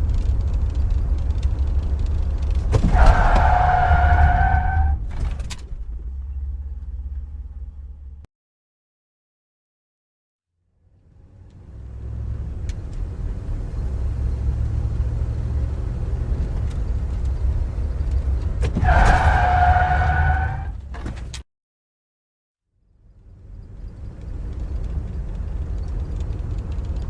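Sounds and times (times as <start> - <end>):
car engine and road rumble: 0.0 - 8.3, 10.8 - 21.4, 22.9 - 27.0
tyres squealing in a skid: 2.7 - 5.5, 18.1 - 21.3.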